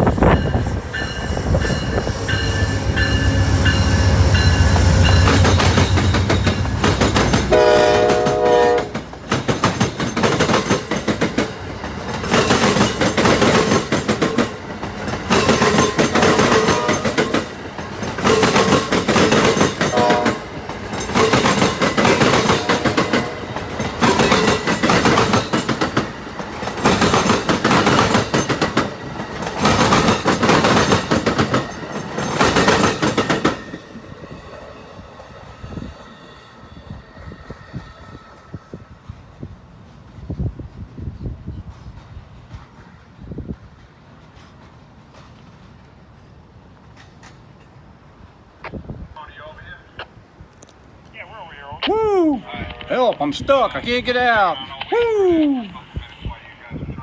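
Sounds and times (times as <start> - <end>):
train wheels pounding over crossing: 0.0 - 45.9
train horn: 7.5 - 9.0, 16.3 - 17.3, 19.8 - 20.5, 22.4 - 23.6.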